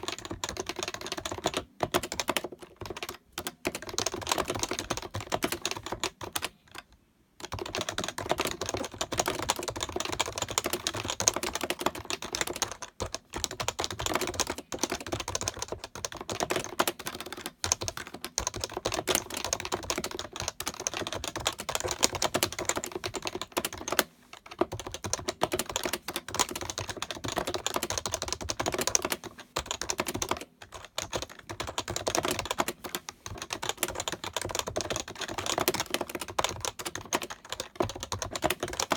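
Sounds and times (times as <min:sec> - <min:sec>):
rapid keyboard typing: 0:00.0 - 0:38.9.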